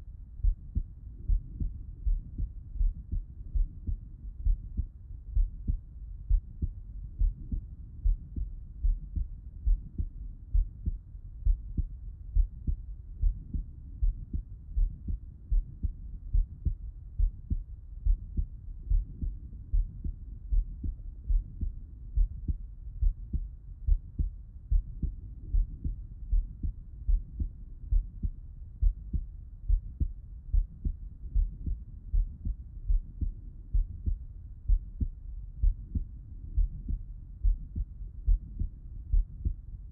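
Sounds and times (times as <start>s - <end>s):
heartbeat thumps: 0.3s - 39.9s.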